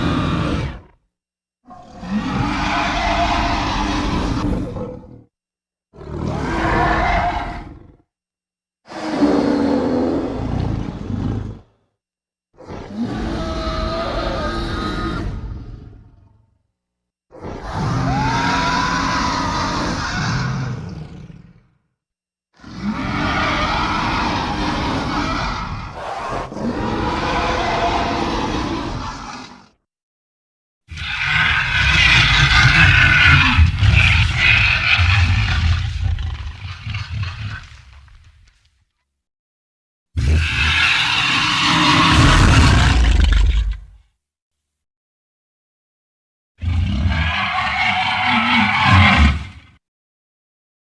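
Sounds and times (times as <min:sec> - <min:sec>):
deep rough dinosaur roars: 0:01.7 - 0:05.3, 0:06.0 - 0:08.1, 0:08.9 - 0:11.8, 0:12.6 - 0:16.3, 0:22.6 - 0:29.8, 0:30.9 - 0:38.3, 0:40.2 - 0:44.0, 0:46.6 - 0:49.5
harsh rasping roars: 0:30.9 - 0:38.0, 0:40.2 - 0:43.9.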